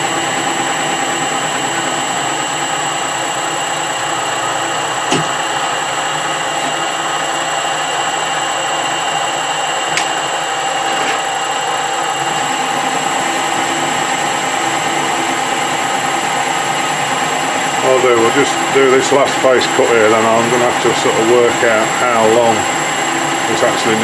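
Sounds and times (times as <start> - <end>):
metal lathe humming: 0.0 - 24.0.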